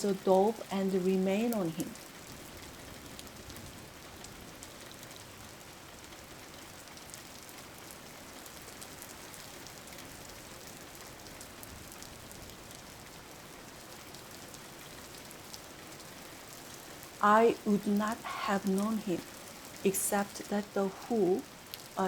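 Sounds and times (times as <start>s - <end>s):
steady rain hissing: 0.0s - 22.0s.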